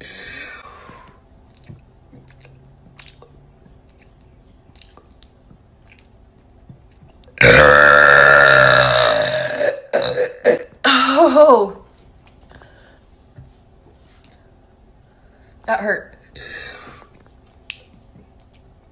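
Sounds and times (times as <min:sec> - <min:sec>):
faint mouth clicks: 0:01.5 - 0:06.1
person burping: 0:07.4 - 0:11.2.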